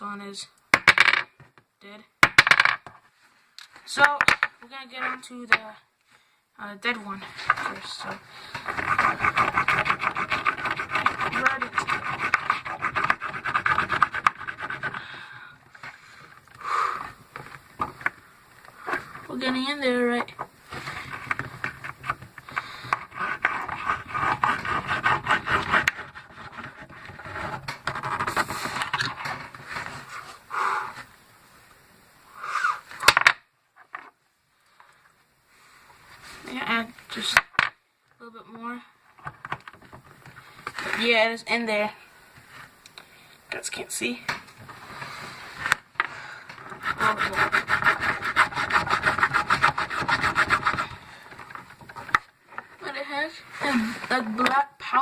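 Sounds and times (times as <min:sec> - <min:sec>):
knife sawing metal casing: 0:08.6 - 0:15.0, 0:46.8 - 0:51.0.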